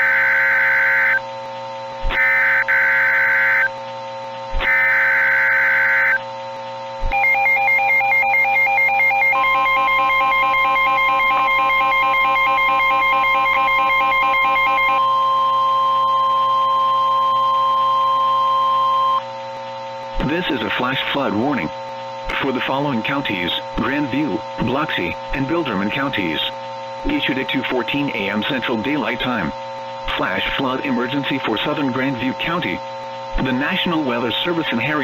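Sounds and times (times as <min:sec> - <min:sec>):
steady high tone: 0:00.0 - 0:01.2, 0:02.0 - 0:03.7, 0:04.6 - 0:06.2, 0:07.0 - 0:19.2
warbling electronic alert signal: 0:00.0 - 0:01.2, 0:02.1 - 0:03.7, 0:04.6 - 0:06.2, 0:07.0 - 0:19.2
screeching digital data bursts: 0:00.0 - 0:01.3, 0:02.0 - 0:03.8, 0:04.6 - 0:06.2.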